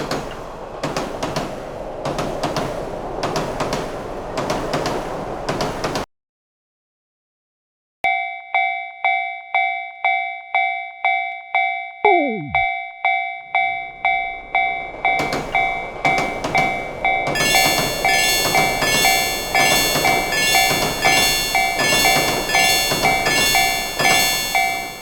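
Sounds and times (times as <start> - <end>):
train running: 0.0 - 6.0, 13.7 - 25.0
train wheel clacks: 0.0 - 6.1, 14.0 - 25.0
railway crossing bell ringing: 8.1 - 25.0
short falling tone: 12.1 - 12.7.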